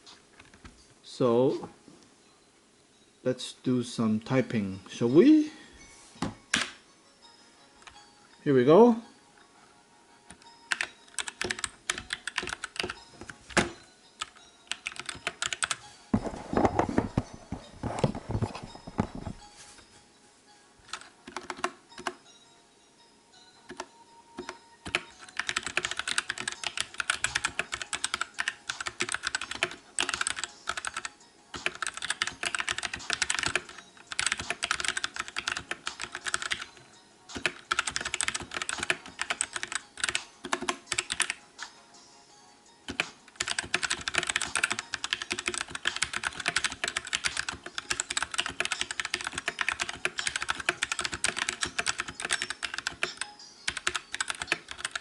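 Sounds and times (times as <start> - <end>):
mechanical keyboard typing: 10.3 - 13.0, 14.2 - 15.8, 20.9 - 22.2, 23.7 - 41.4, 42.9 - 55.0.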